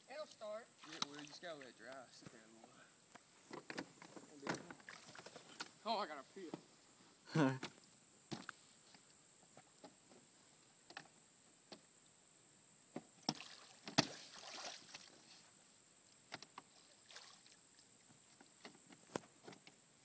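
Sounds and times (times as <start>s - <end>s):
water splashing in creek: 0.8s - 1.9s, 4.6s - 5.6s, 13.2s - 15.4s, 16.3s - 19.0s
small knocks in water: 13.2s - 15.1s.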